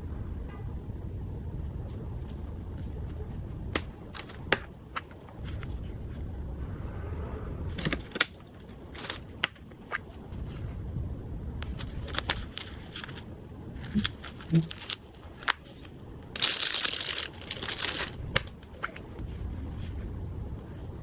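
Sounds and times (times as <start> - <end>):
low steady rumble: 0.0 - 21.0
sharp clicks and crinkles: 1.6 - 6.2, 7.7 - 10.7, 11.6 - 19.5.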